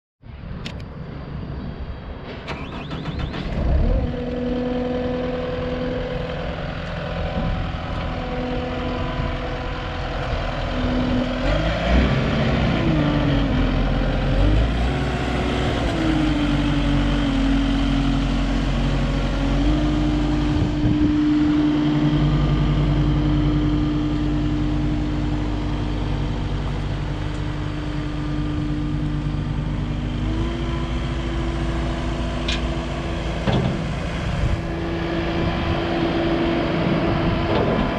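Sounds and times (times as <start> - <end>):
diesel engine idling and revving: 0.5 - 37.9.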